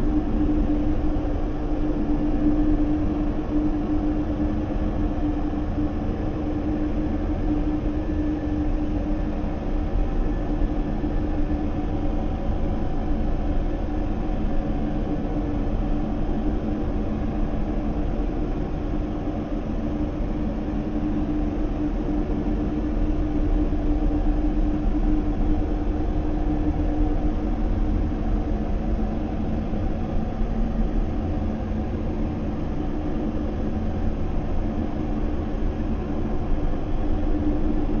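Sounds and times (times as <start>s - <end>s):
sustained hum tone: 0.0s - 38.0s.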